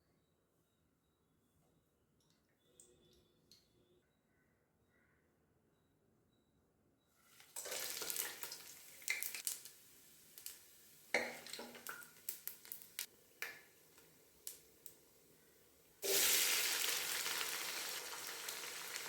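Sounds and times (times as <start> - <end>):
food sizzling in a pan: 7.2 - 13.1, 16.0 - 19.0.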